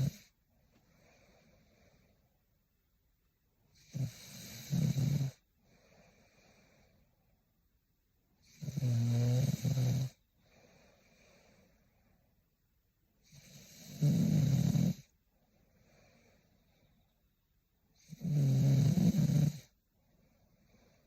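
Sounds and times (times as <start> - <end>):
woman snoring: 0.0 - 0.3, 3.8 - 5.4, 8.4 - 10.2, 13.2 - 15.1, 18.0 - 19.8
soft breaths: 0.0 - 2.7, 3.6 - 8.6, 9.6 - 21.0.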